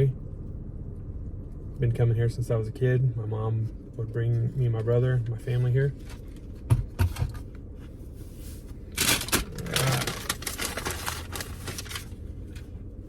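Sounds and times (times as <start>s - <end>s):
paper bag crinkling and rustling: 8.9s - 12.7s.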